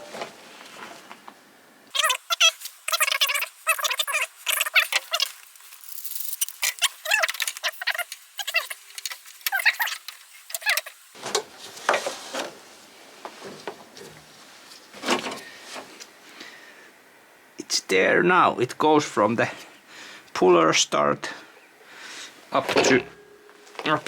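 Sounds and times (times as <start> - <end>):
plastic rubbing and squeaking: 13.4 - 16.0.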